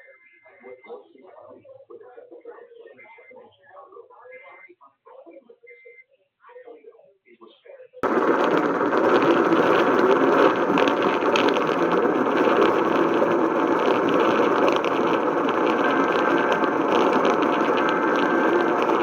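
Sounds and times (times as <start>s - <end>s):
steady static rushing noise: 8.0s - 19.0s.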